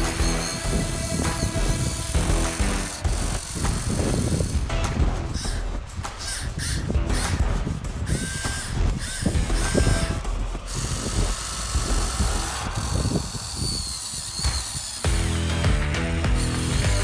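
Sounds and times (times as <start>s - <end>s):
small electric motors whining: 0.0s - 17.0s.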